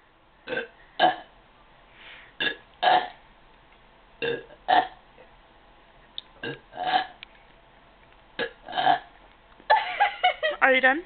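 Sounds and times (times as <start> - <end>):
girl burping: 0.5 - 1.2.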